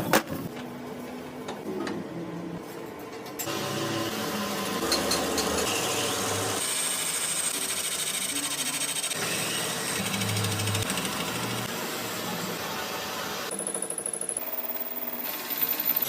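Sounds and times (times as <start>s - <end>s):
power tool running: 3.4s - 16.0s.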